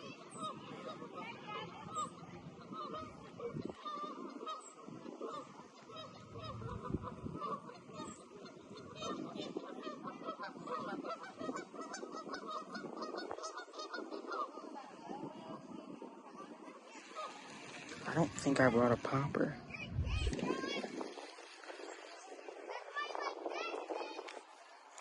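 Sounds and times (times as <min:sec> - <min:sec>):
geese honking: 0:00.0 - 0:15.6, 0:16.9 - 0:19.4.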